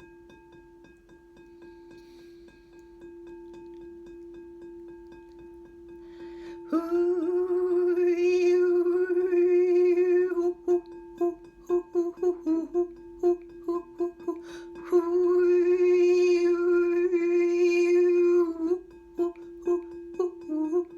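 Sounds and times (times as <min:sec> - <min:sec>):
steady ringing tone: 0:02.6 - 0:20.9
woman singing wordless tones: 0:06.6 - 0:20.9.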